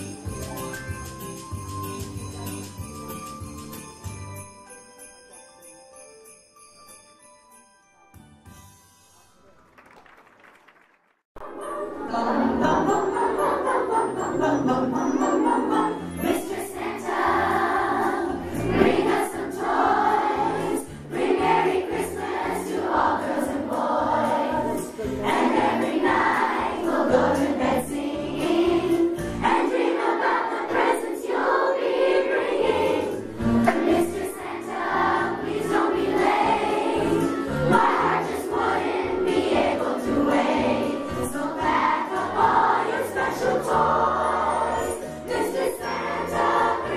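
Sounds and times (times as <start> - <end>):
musical accompaniment with beat: 0.0 - 5.3
children's choir singing christmas song: 0.0 - 6.4, 11.4 - 46.9
children's choir singing: 11.4 - 46.9.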